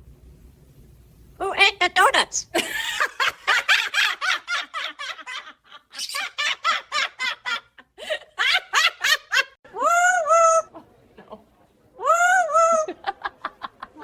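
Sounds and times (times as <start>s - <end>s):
person laughing: 2.5s - 9.5s.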